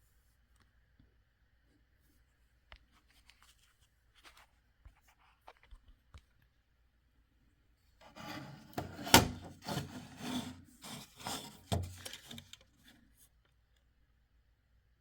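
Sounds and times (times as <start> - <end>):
scraping and rubbing handling noise: 8.0 - 13.2.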